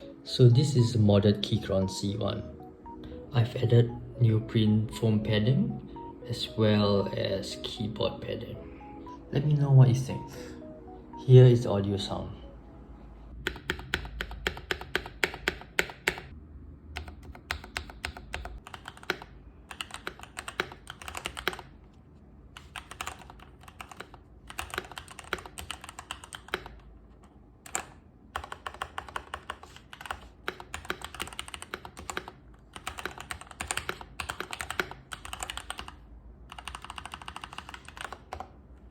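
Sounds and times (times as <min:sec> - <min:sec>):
mechanical keyboard typing: 0:13.4 - 0:16.4, 0:17.0 - 0:21.7, 0:22.6 - 0:26.9, 0:27.6 - 0:38.6.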